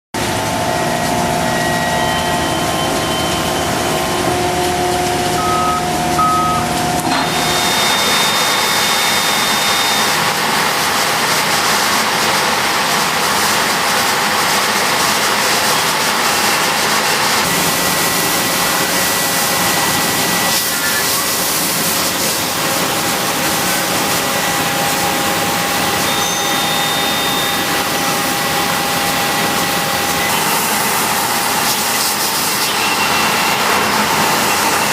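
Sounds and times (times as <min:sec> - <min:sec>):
machine whining tones: 0:00.2 - 0:13.4, 0:15.0 - 0:34.9
machine shop din: 0:00.2 - 0:34.9
short beeps: 0:05.3 - 0:06.8, 0:07.4 - 0:10.2, 0:26.0 - 0:27.9.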